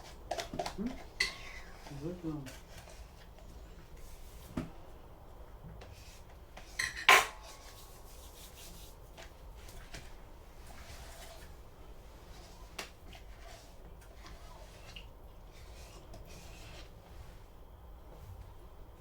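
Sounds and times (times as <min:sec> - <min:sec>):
cutlery scraping on plates: 0:00.3 - 0:03.0, 0:06.6 - 0:07.8.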